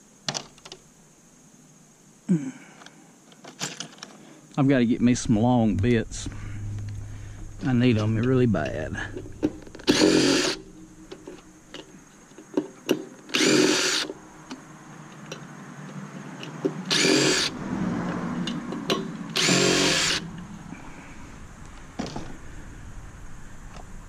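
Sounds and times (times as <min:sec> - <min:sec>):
power drill running: 0:09.8 - 0:10.7, 0:13.3 - 0:14.1, 0:16.9 - 0:17.6, 0:19.4 - 0:20.2.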